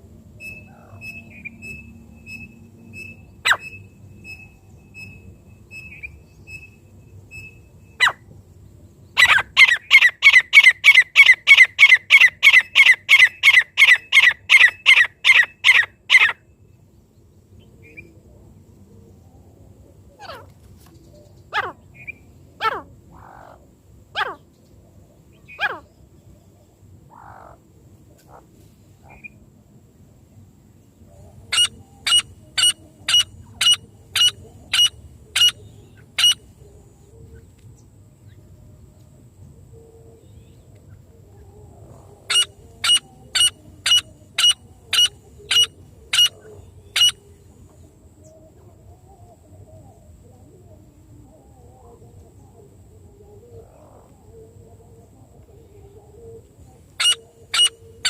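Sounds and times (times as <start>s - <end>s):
francolin calling: 0.4s - 8.3s, 9.2s - 16.5s, 25.3s - 26.0s, 31.1s - 37.5s, 39.8s - 49.2s, 55.4s - 58.0s.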